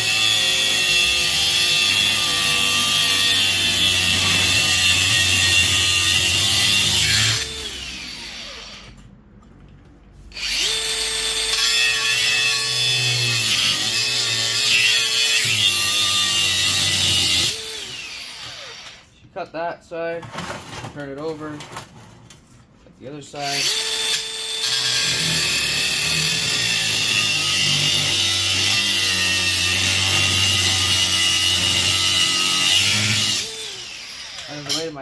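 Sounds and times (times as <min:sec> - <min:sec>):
angle grinder cutting metal: 0:00.0 - 0:09.0, 0:10.3 - 0:19.1, 0:23.4 - 0:35.0.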